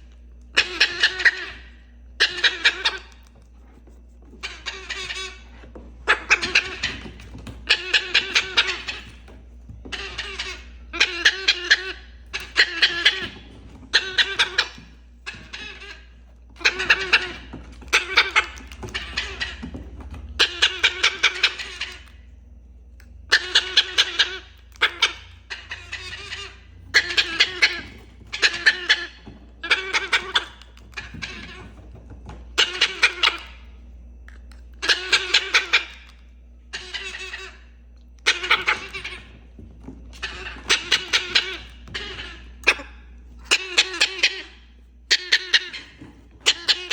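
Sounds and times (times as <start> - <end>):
parrot imitating laughter: 0.6 - 1.6, 6.0 - 9.2, 9.9 - 19.8, 20.4 - 22.1, 23.3 - 31.7, 32.6 - 33.5, 34.8 - 36.0, 36.7 - 37.6, 38.2 - 39.4, 40.1 - 46.9.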